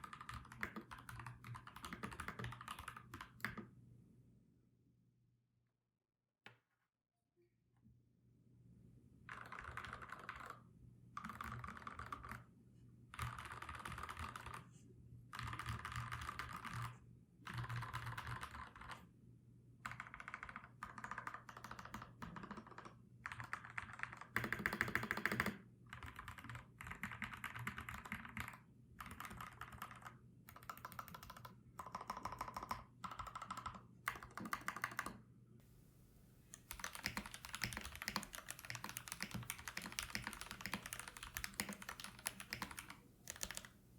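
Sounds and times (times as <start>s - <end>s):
mechanical keyboard typing: 0.0s - 3.6s, 9.3s - 10.6s, 11.2s - 12.4s, 13.1s - 14.6s, 15.3s - 19.0s, 19.9s - 35.2s, 36.5s - 43.8s.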